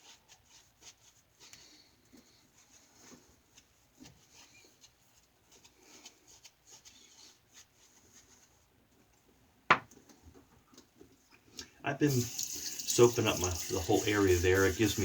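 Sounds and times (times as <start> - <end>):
shaving brush swishing on face: 0.0 - 1.5, 12.1 - 15.0.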